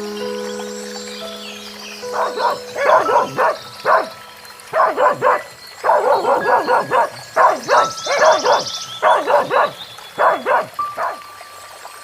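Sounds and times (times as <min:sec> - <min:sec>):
dog yapping: 0:02.2 - 0:04.1, 0:04.7 - 0:11.2.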